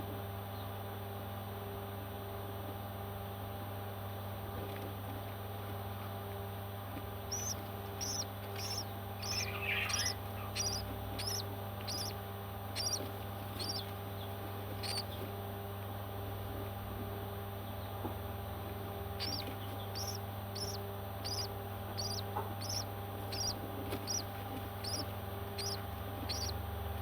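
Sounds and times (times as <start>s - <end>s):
steady hum: 6.6s - 27.0s
parrot chirping: 7.3s - 12.2s, 12.8s - 13.9s, 14.8s - 15.2s, 19.2s - 26.6s
raspy parrot call: 7.3s - 12.2s, 12.8s - 13.0s, 13.6s - 13.9s, 14.8s - 15.1s, 19.2s - 26.6s.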